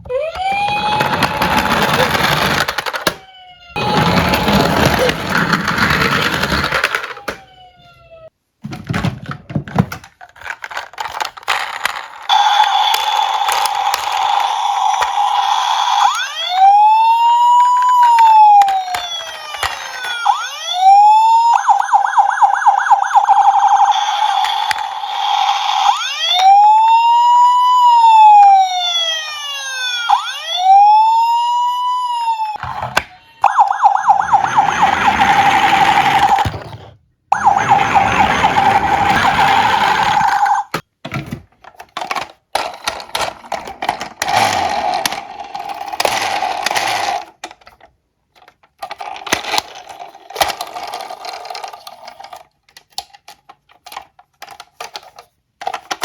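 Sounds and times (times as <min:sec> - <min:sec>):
siren wailing: 0:00.0 - 0:08.3, 0:12.3 - 0:36.7, 0:37.3 - 0:40.8
toy cars rattling down a slope: 0:00.4 - 0:03.2, 0:03.8 - 0:07.4, 0:09.8 - 0:20.9, 0:21.6 - 0:26.6, 0:33.5 - 0:36.6, 0:37.4 - 0:40.8, 0:41.7 - 0:56.0.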